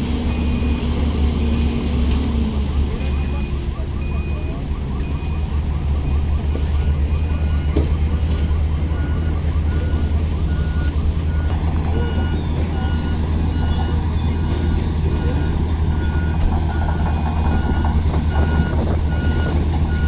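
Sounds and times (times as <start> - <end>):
diesel machinery engine rumble: 0.0 - 20.0
short warning beeps: 2.9 - 8.3.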